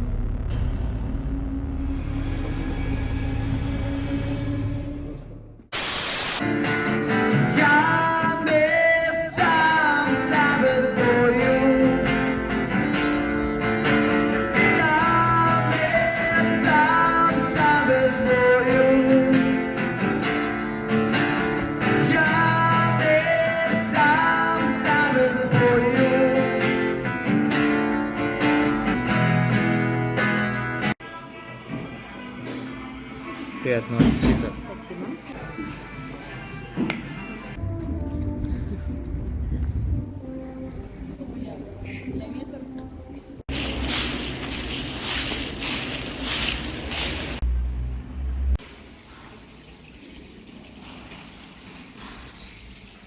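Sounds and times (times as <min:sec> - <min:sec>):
short burst of noise: 0:05.7 - 0:06.5
guitar music: 0:06.4 - 0:31.0.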